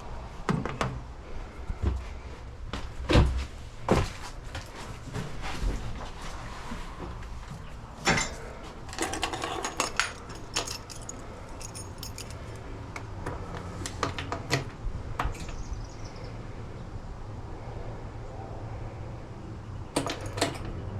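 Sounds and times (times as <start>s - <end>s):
metallic clicks and clanks: 20.0s - 20.8s.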